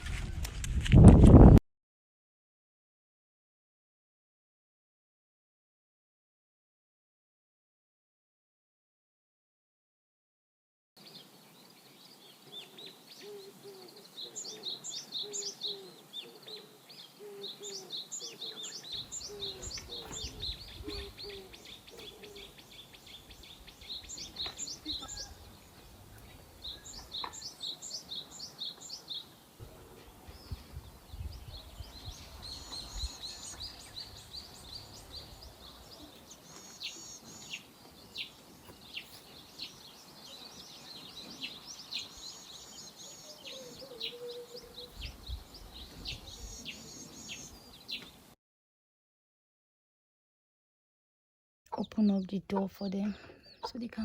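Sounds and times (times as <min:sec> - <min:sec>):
lower repeated bird calls: 0:11.0 - 0:48.3
small birds chirping: 0:11.0 - 0:48.4, 0:51.7 - 0:54.0.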